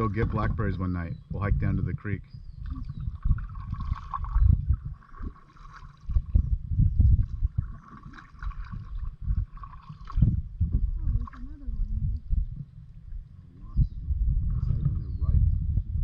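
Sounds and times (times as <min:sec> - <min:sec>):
wind rumble on microphone: 0:00.0 - 0:16.0
paddle strokes splashing: 0:02.6 - 0:06.4, 0:07.2 - 0:10.4.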